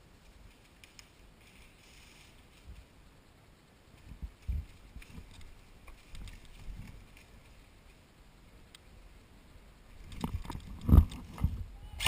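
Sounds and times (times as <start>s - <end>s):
faint clicks: 8.6s - 8.9s.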